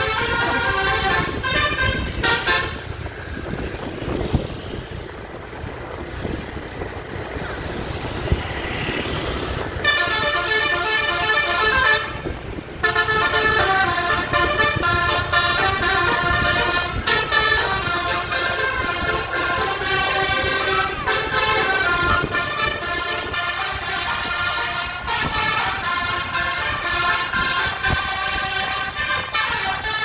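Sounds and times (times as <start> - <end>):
bus air horn playing a tune: 0.0 - 3.1, 9.7 - 30.0
low vehicle rumble: 0.0 - 30.0.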